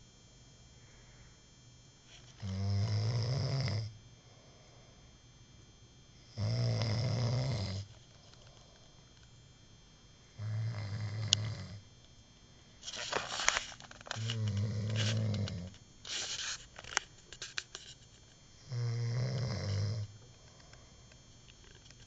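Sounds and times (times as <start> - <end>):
man snoring: 2.4 - 4.9, 6.3 - 7.9, 10.4 - 11.8, 14.2 - 15.8, 18.6 - 20.6.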